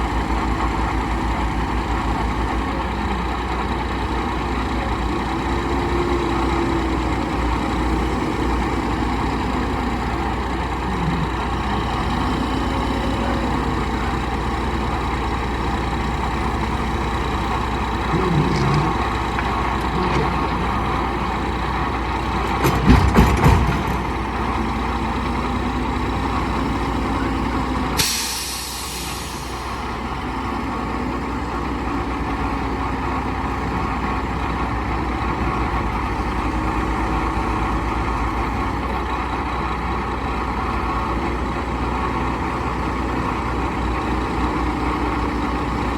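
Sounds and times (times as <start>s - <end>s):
diesel engines running: 0.0s - 45.9s
air brakes hissing: 28.0s - 29.8s.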